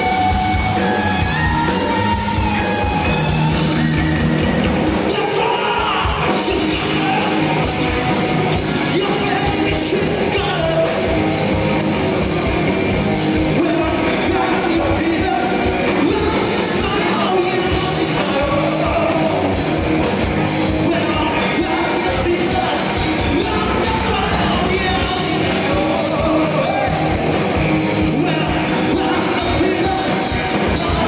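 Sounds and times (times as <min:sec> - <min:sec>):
amplified instruments: 0:00.0 - 0:31.0
drums: 0:00.0 - 0:31.0
person singing: 0:05.0 - 0:07.7, 0:08.8 - 0:11.2, 0:13.4 - 0:19.6, 0:20.7 - 0:31.0.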